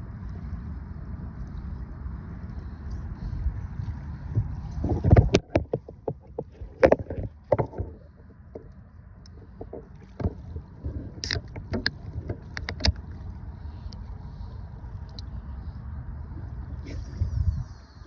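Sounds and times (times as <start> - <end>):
low steady rumble: 0.0 - 18.0
irregular knocks and clunks: 4.4 - 13.1.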